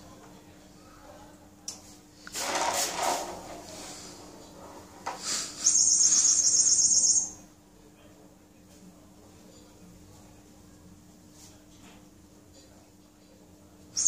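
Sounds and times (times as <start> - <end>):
squeaky pet toy trill: 5.6 - 7.4.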